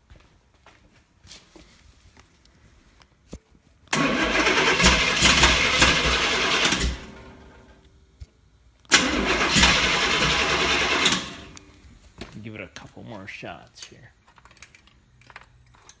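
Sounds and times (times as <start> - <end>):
engine starter cranking: 3.9 - 7.9, 8.9 - 16.0.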